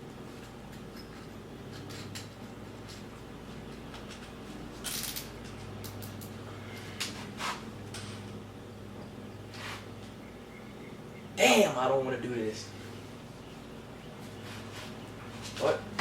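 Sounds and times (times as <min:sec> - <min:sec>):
steady low hum: 0:00.0 - 0:16.0
tools clicking and scraping: 0:00.4 - 0:08.4.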